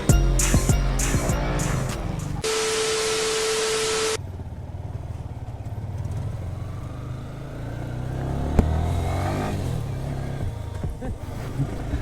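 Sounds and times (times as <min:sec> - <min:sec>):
motorcycle engine running: 0:04.1 - 0:12.0.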